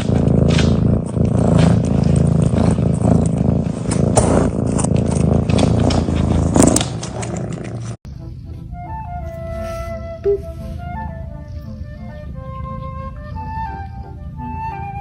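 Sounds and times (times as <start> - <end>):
cat purring: 0.0 - 8.0.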